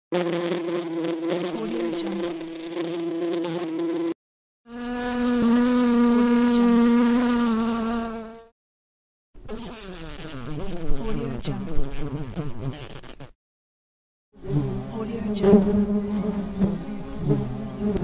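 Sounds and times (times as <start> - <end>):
bee wings buzzing: 0.1 - 8.5, 9.4 - 13.4, 14.4 - 18.0.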